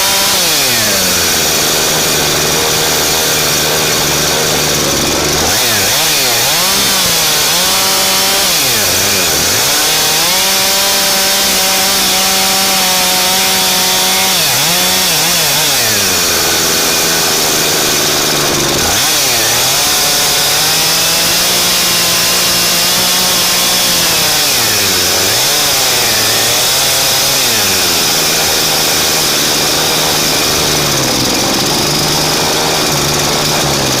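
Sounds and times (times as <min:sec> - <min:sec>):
chainsaw revving: 0:00.0 - 0:34.0.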